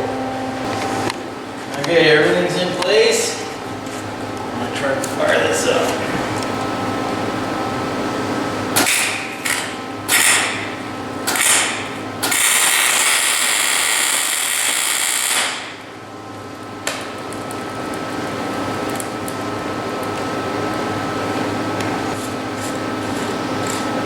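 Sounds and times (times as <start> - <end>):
steady hum: 0.0 - 24.0
arc welder crackle: 8.7 - 20.4.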